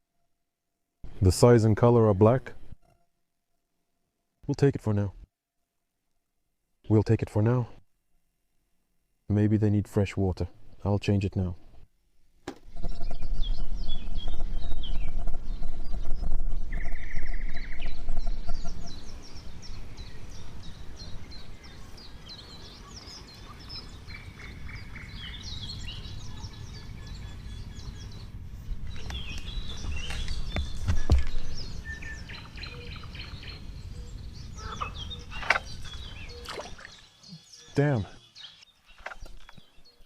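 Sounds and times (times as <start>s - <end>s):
songbirds chirping and trilling: 12.7s - 40.0s.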